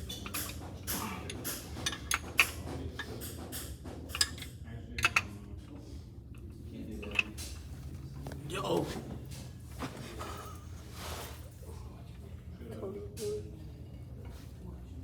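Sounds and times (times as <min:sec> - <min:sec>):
metal tools clinking on engine parts: 0:00.0 - 0:02.6.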